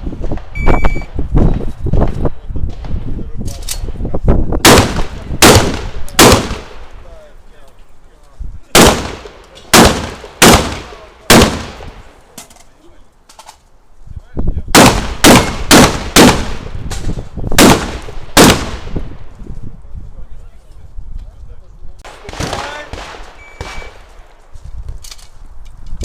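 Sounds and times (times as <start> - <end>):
shotgun shots echoing: 4.6 - 6.9, 8.8 - 12.1, 14.7 - 16.7, 17.6 - 19.0, 22.1 - 24.1.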